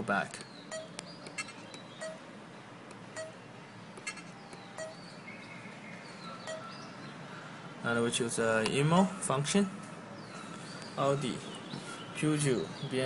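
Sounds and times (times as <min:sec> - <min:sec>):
short electronic beep: 0:00.7 - 0:00.9, 0:03.2 - 0:03.4, 0:06.5 - 0:06.7.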